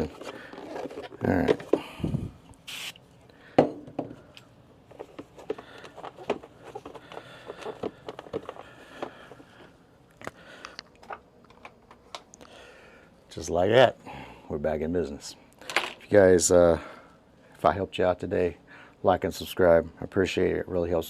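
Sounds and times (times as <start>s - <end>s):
plastic parts clicking and scraping: 0.0s - 1.8s, 4.9s - 12.3s
brief hiss: 2.7s - 3.0s.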